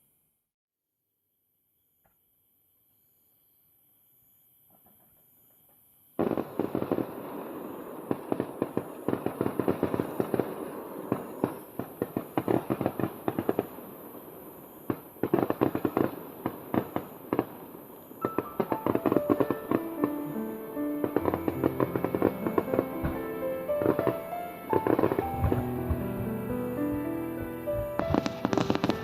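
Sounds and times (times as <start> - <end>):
fireworks popping and crackling: 6.2 - 29.0.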